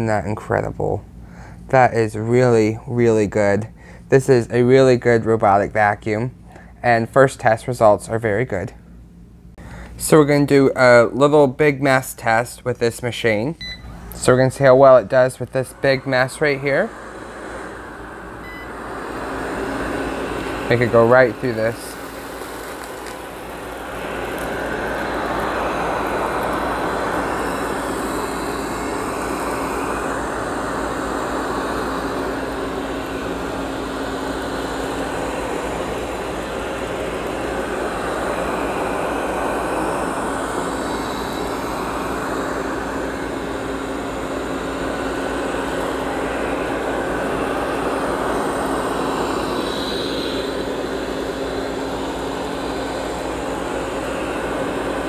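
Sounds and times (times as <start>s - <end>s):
robot vacuum motor hum: 15.4s - 55.0s.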